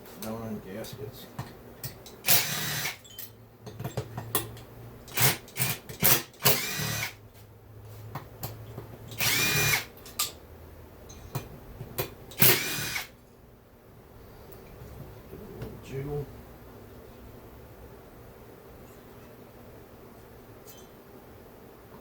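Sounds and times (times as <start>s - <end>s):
power drill motor whirring: 2.2s - 3.0s, 5.1s - 7.2s, 9.1s - 9.9s, 12.4s - 13.1s.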